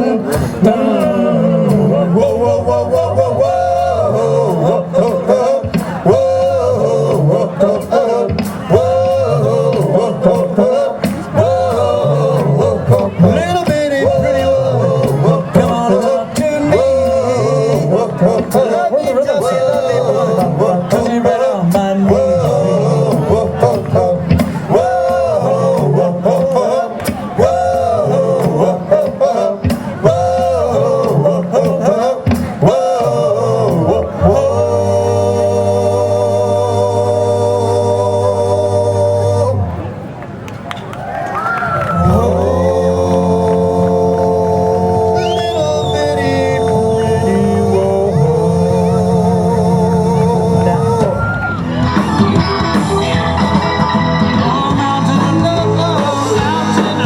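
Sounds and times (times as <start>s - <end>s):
live rock and roll band: 0.0s - 40.4s, 41.6s - 57.0s
person singing: 42.0s - 57.0s
rock band playing: 50.5s - 57.0s.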